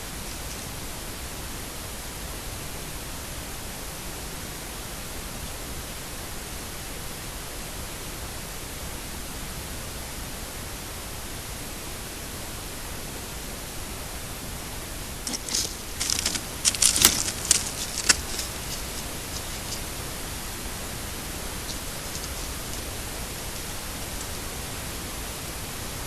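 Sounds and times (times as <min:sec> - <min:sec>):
steady hiss: 0:00.0 - 0:26.0
sharp crackles and snaps: 0:15.2 - 0:24.7.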